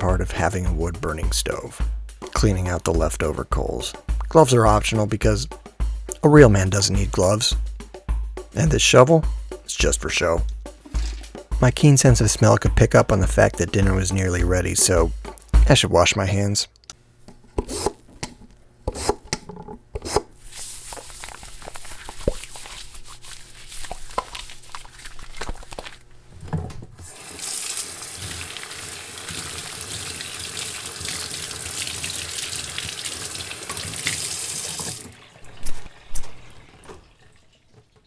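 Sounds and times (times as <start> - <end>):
water running into sink: 17.2 - 38.0.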